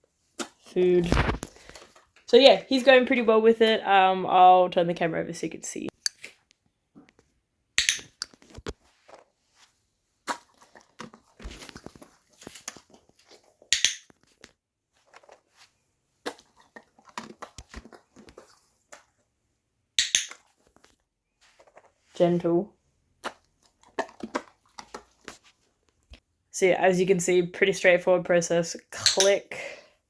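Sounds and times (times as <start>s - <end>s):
dog crunching dry kibble: 23.2s - 25.5s.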